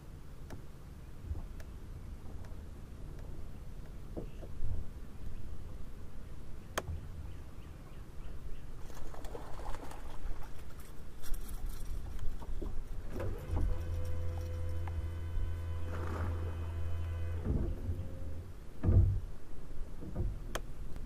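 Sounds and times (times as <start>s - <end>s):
light clicks and crackles: 8.9s - 15.0s
electric motor hum: 13.1s - 18.6s.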